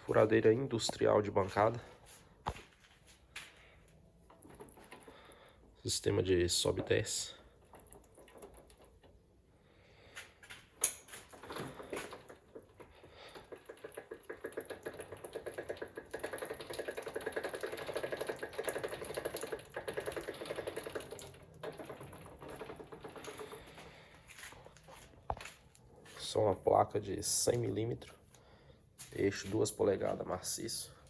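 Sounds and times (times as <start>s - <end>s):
drill press rattling tick: 10.8s - 23.9s.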